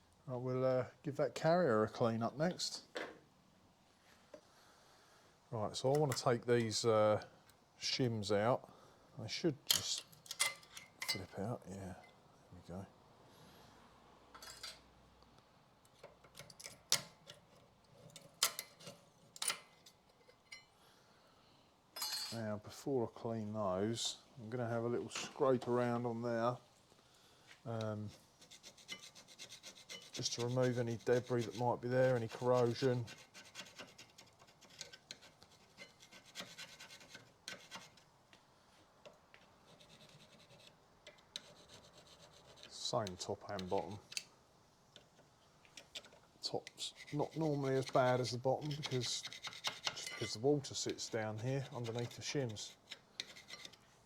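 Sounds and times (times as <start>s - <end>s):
tool scraping metal: 28.1s - 38.0s, 39.6s - 44.2s, 46.8s - 53.9s.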